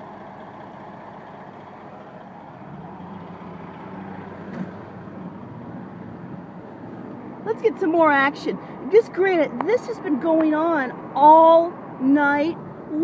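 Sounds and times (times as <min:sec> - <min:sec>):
heavy construction machinery running: 0:00.0 - 0:07.9
engine hum: 0:00.0 - 0:13.0.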